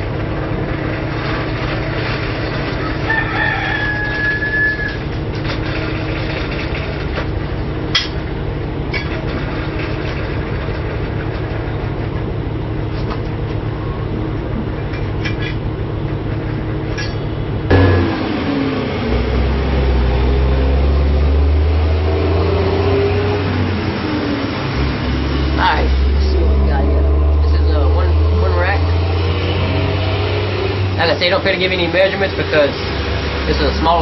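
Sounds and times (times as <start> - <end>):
steady mechanical drone: 0.0 - 34.0
rooster crowing: 2.8 - 5.1.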